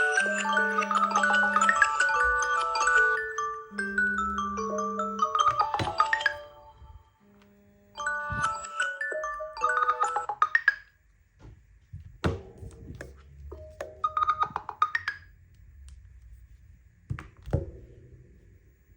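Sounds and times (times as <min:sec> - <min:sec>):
phone alarm melodic tone: 0:00.0 - 0:07.0, 0:08.0 - 0:10.4.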